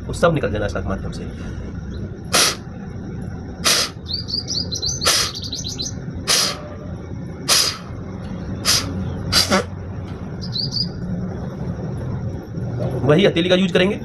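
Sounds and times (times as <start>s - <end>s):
small birds chirping: 1.6s - 11.1s
forceful blasts of breath through nose: 2.3s - 2.7s, 3.6s - 4.0s, 5.0s - 5.4s, 6.3s - 6.7s, 7.5s - 8.0s, 8.6s - 9.7s.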